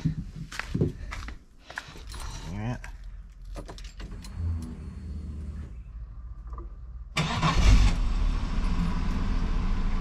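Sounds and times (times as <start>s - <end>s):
car engine cranking and running: 3.4s - 10.0s.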